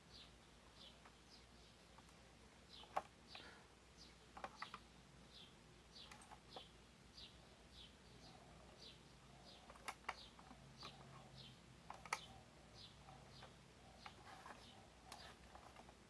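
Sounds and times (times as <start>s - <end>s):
small bird chirping: 0.0s - 16.0s
sharp clicks: 4.3s - 4.9s, 6.0s - 6.7s, 9.6s - 11.1s, 11.8s - 12.3s.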